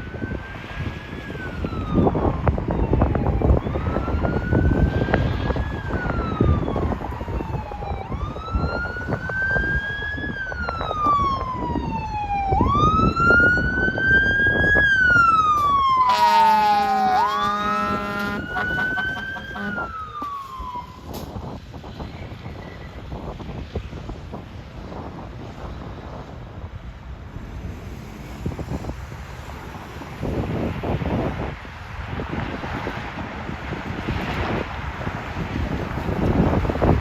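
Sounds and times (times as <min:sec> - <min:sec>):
fire truck siren wailing: 0:00.0 - 0:21.6, 0:30.2 - 0:37.0
air horn blast: 0:16.0 - 0:20.0.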